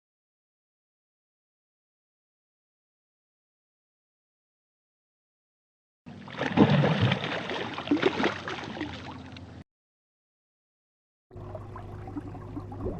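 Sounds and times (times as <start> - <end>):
water splashing with clicks: 6.3 - 9.6
low hum: 11.3 - 12.9
small bubbling blips: 11.3 - 12.9.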